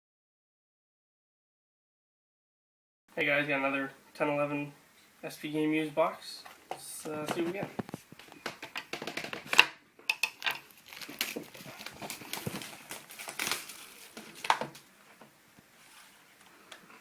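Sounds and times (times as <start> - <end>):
plastic wrapping crinkling and tearing: 10.2 - 17.0.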